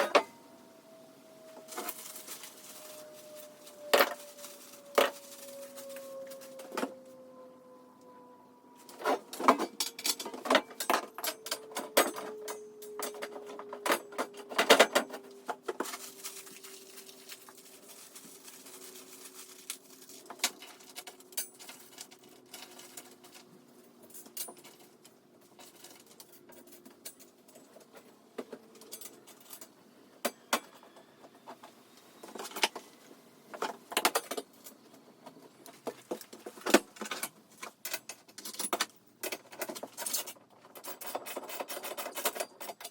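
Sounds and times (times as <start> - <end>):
metal parts and tools clattering: 8.8 - 17.5, 20.0 - 30.9, 35.7 - 42.9.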